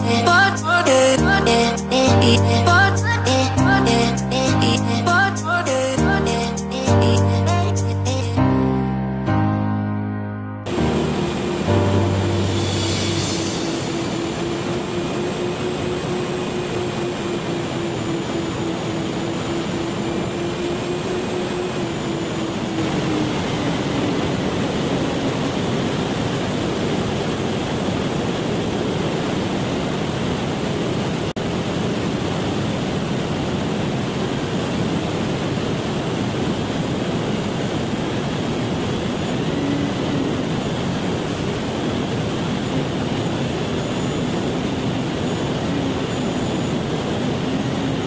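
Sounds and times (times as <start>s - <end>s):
faint motor whine: 10.7s - 48.0s.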